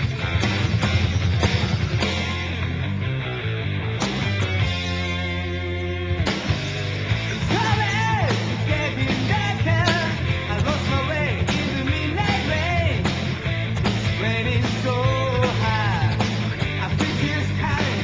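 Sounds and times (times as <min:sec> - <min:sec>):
heavy metal band playing: 0:00.0 - 0:18.0
male rock vocal singing: 0:07.1 - 0:18.0.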